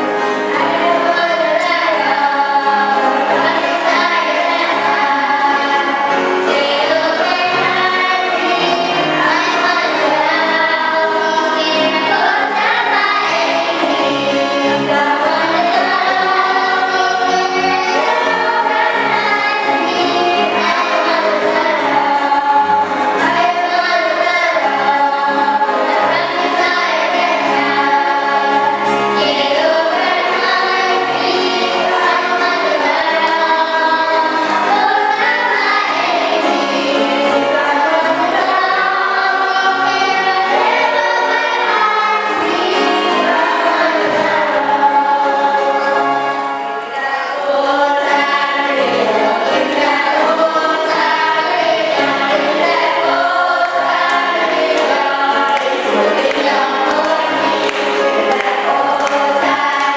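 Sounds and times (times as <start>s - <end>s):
choir singing a hymn: 0.0s - 59.9s.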